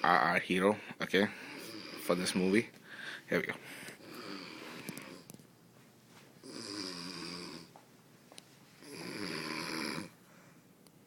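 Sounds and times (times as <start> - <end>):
man snoring: 1.4 - 2.3, 4.0 - 5.3, 6.4 - 7.7, 8.8 - 10.2.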